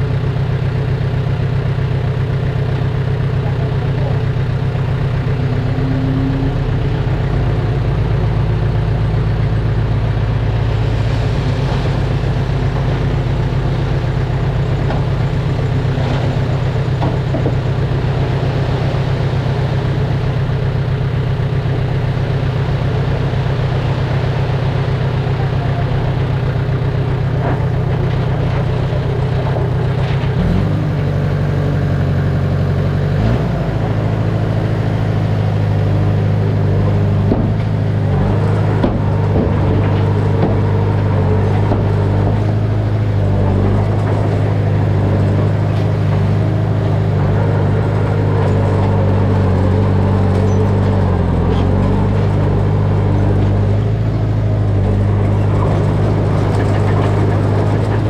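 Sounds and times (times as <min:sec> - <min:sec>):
heavy diesel engine running: 0:00.0 - 0:58.0.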